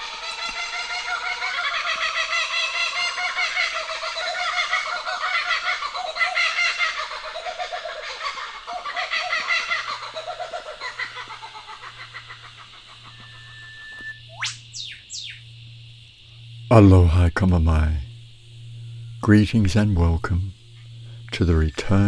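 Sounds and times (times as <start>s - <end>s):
kookaburras laughing: 0.0s - 14.1s
whipbird whip-crack call: 13.2s - 15.4s.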